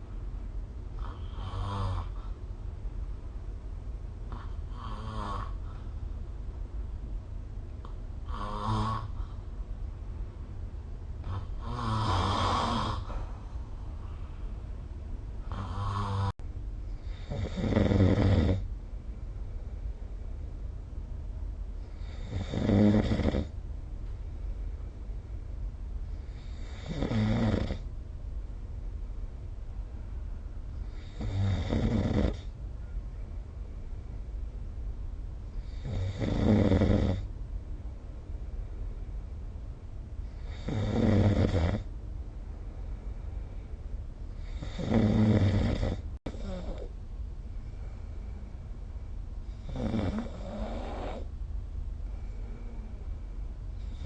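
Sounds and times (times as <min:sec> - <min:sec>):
person snoring: 0:11.2 - 0:13.2, 0:15.5 - 0:16.3, 0:44.4 - 0:46.9, 0:49.5 - 0:51.3.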